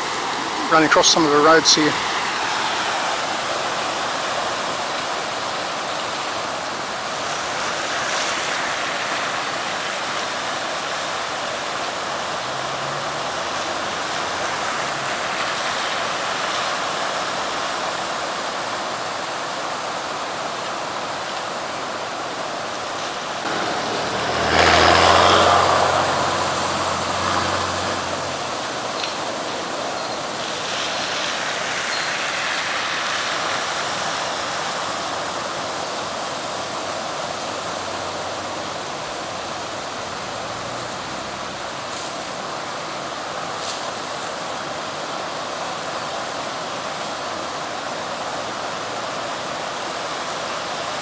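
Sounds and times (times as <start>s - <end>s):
floodwater rushing over road: 0.0s - 51.0s
vehicle engine passing: 11.7s - 15.8s, 23.4s - 29.0s, 37.7s - 41.9s.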